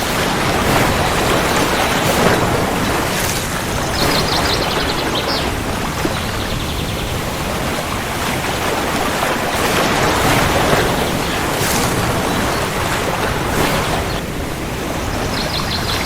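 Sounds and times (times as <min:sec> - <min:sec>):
low rumble of thunder: 0:00.2 - 0:07.8.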